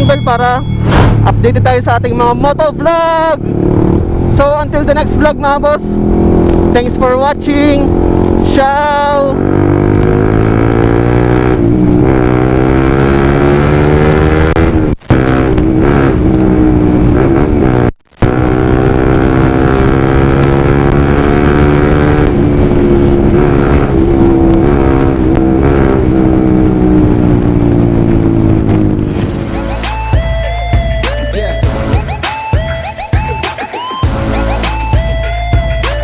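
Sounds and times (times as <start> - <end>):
motorcycle engine revving: 0.0 - 32.9.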